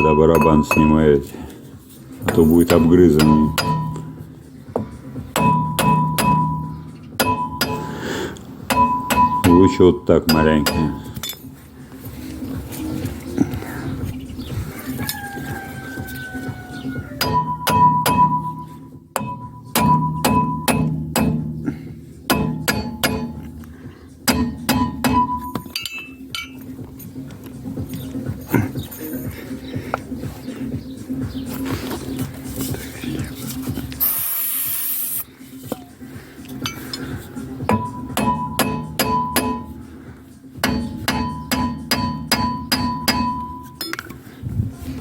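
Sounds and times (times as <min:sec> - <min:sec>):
hammer striking steel brake drum: 0:02.7 - 0:04.2, 0:05.3 - 0:07.9, 0:08.7 - 0:11.1, 0:17.2 - 0:23.5, 0:24.2 - 0:26.5, 0:37.7 - 0:39.8, 0:40.6 - 0:44.0.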